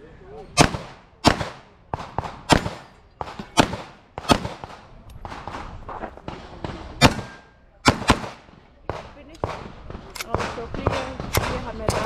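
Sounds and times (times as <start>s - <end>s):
handgun shots: 7.0s - 12.0s.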